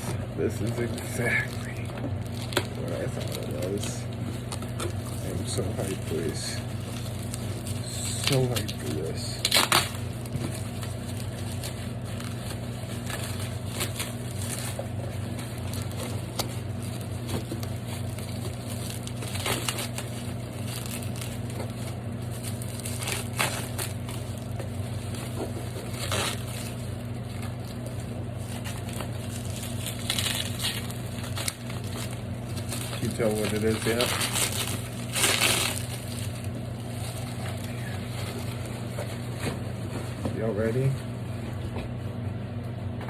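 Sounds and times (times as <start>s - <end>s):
steady low hum: 0.0s - 43.0s
cardboard rustling and crinkling: 0.1s - 42.0s.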